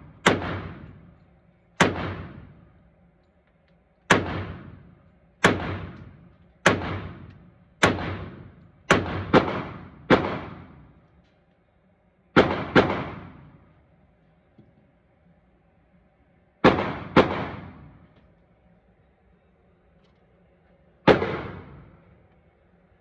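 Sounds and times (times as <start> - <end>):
pistol shots: 0.0 - 1.1, 1.8 - 2.7, 4.1 - 10.9, 12.4 - 13.6, 16.6 - 18.0, 21.0 - 22.1.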